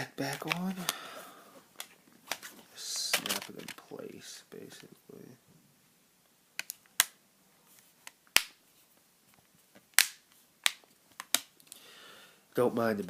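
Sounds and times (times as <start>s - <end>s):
plastic phone cover clips snapping: 6.6s - 7.2s.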